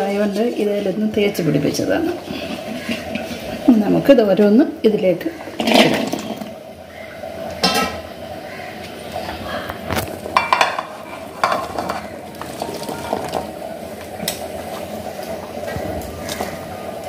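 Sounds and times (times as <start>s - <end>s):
utensil clinking against a pot: 10.4s - 13.5s.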